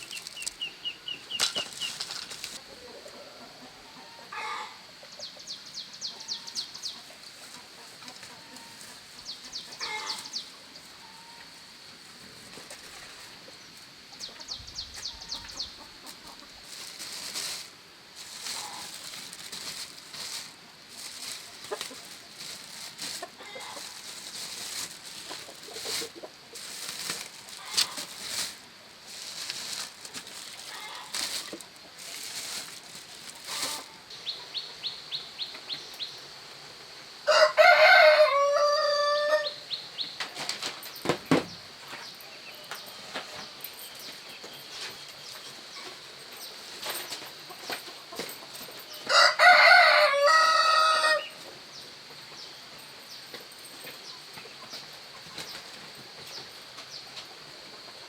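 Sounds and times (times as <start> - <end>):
rustling or clattering: 0.0 - 0.7, 1.3 - 2.6, 15.0 - 34.0, 40.2 - 42.1, 42.7 - 49.0
chickens clucking: 0.0 - 36.7, 41.8 - 52.5, 53.3 - 58.0.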